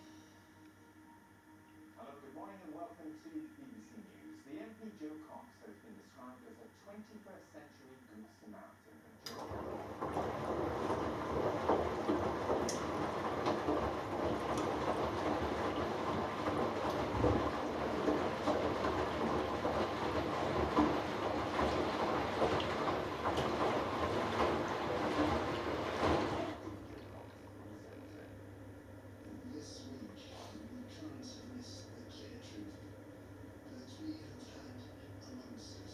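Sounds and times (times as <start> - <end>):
washing machine drum sloshing: 9.3 - 35.9.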